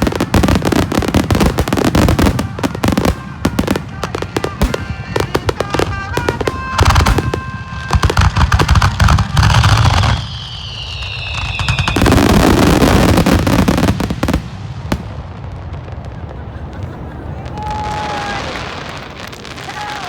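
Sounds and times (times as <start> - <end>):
fireworks crackling and booming: 0.0 - 20.0
high falling whistle: 5.7 - 14.0.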